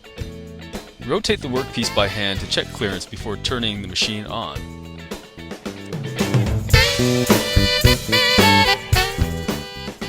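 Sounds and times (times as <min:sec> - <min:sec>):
swing jazz music with horns: 0:01.4 - 0:02.9, 0:05.7 - 0:10.0.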